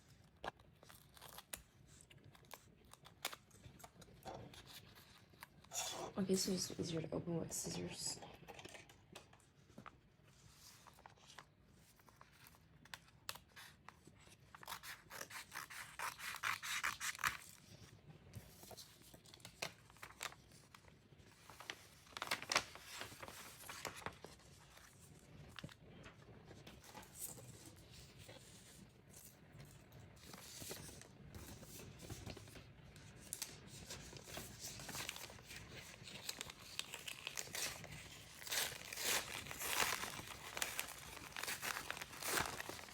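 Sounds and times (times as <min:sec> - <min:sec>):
wrapping tearing and crinkling: 0:00.0 - 0:06.0, 0:08.5 - 0:42.9
scissors snipping packaging: 0:00.5 - 0:05.6, 0:12.4 - 0:17.7, 0:33.2 - 0:42.9.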